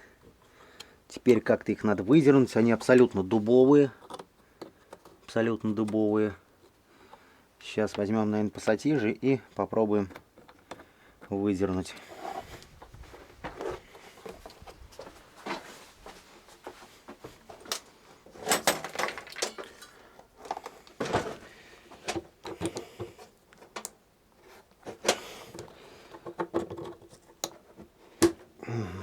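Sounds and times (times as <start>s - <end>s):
plastic clips clicking and creaking: 2.7s - 6.7s, 17.7s - 21.4s, 22.0s - 24.0s.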